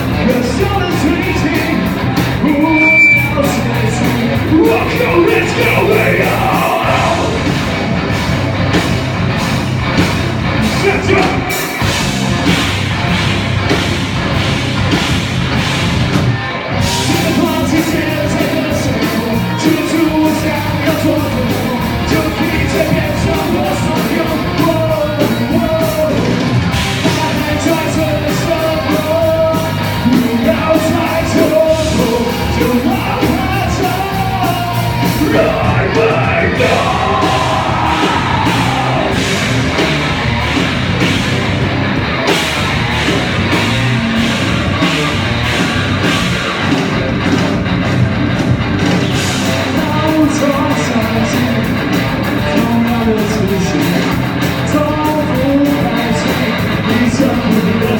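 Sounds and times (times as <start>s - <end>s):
live rock band playing: 0.0s - 57.9s
person singing and yelling: 0.2s - 7.8s, 10.6s - 11.9s, 17.0s - 26.4s, 27.0s - 39.9s.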